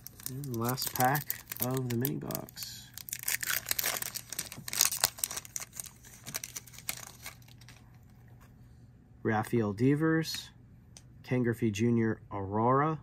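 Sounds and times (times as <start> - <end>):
wrapper tearing and crinkling: 0.0 - 8.0.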